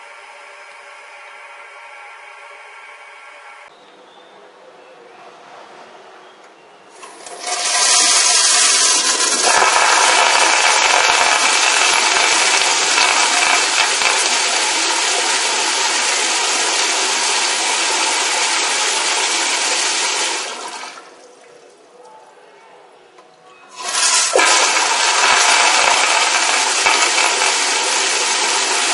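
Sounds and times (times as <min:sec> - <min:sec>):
toilet flushing: 0:06.9 - 0:21.7, 0:23.7 - 0:28.9.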